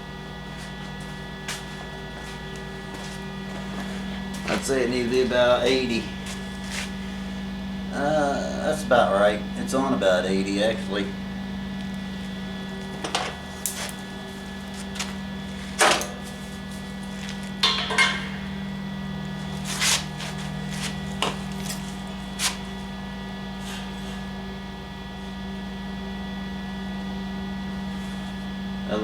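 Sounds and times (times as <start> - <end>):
steady electrical hum: 0.0 - 29.0
metal clanks and knocks: 13.0 - 13.4, 15.7 - 16.4, 17.6 - 18.6.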